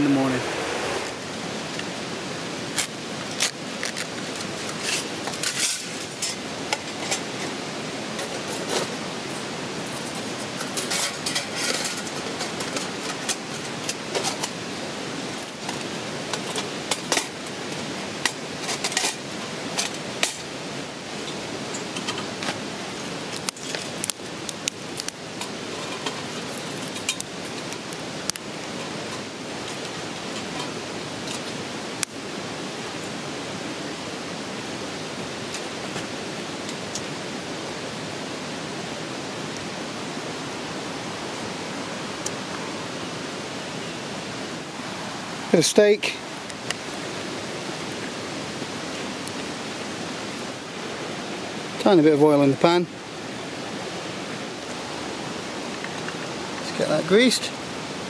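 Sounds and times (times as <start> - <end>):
waterfall rushing: 0.0 - 58.0
metal camp gear clinking: 21.2 - 31.6.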